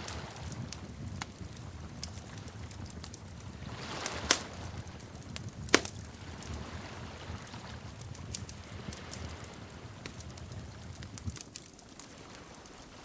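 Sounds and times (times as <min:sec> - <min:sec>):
fire sharp pops: 0:00.0 - 0:13.0
wood fire crackling: 0:00.0 - 0:13.0.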